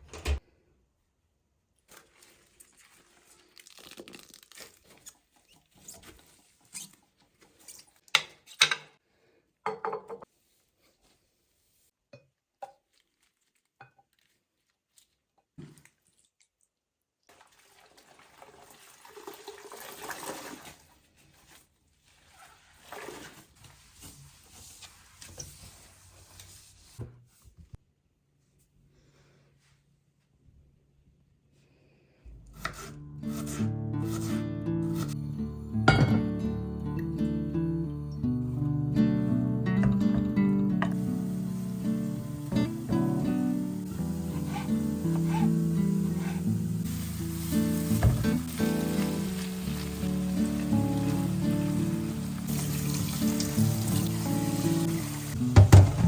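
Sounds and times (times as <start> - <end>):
kitchen knocks and clicks: 8.1 - 8.9, 9.7 - 10.3, 55.6 - 56.0
water running at a sink: 17.3 - 21.0, 40.8 - 56.0.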